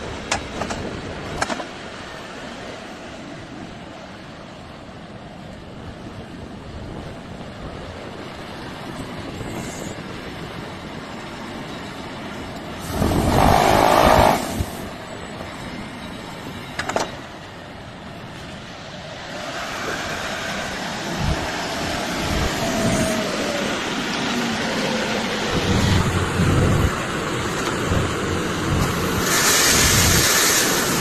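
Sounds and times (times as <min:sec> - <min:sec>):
loud burst of noise: 0:12.8 - 0:15.0, 0:25.4 - 0:31.0.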